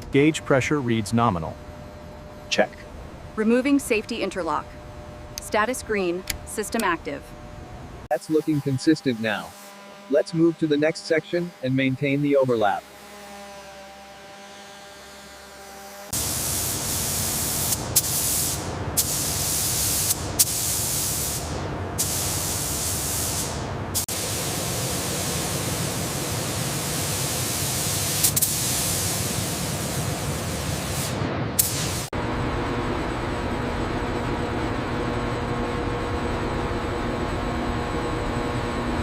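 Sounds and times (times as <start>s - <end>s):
high-pressure spray hissing: 16.2s - 32.1s.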